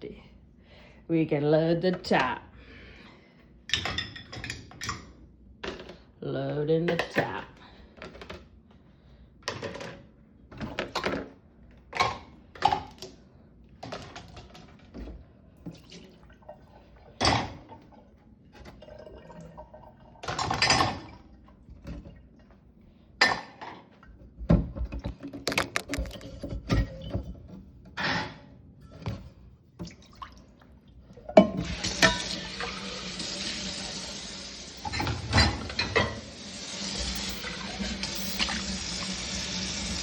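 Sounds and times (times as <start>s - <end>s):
dishes clattering: 34.8s - 36.4s.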